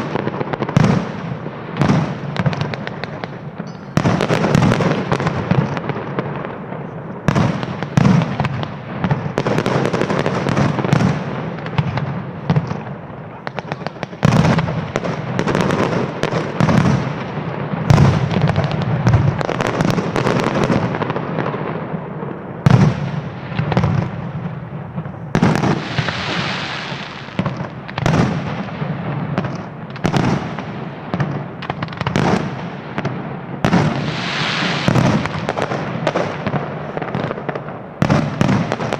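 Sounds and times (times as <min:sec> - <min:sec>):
fireworks crackling: 0:00.0 - 0:38.9
fireworks hissing: 0:25.0 - 0:28.6, 0:33.7 - 0:35.6.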